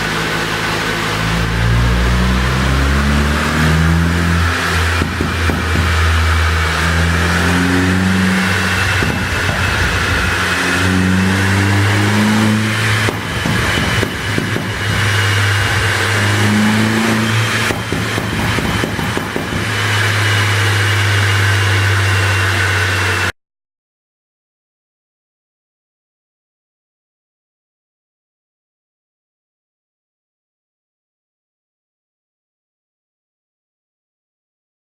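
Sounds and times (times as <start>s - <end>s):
car engine revving hard: 0.0s - 23.3s
exhaust cracks: 0.0s - 23.3s.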